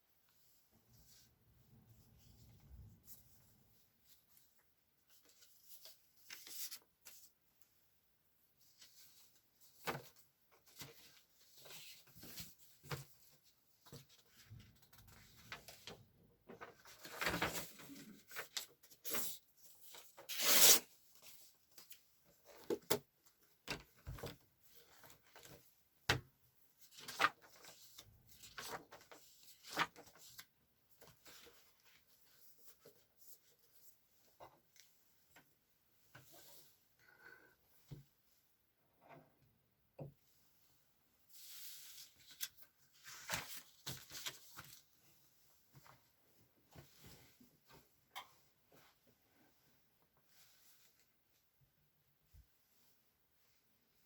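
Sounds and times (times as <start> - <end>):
paper rustling: 8.8 - 22.0, 26.8 - 33.7, 41.4 - 45.0.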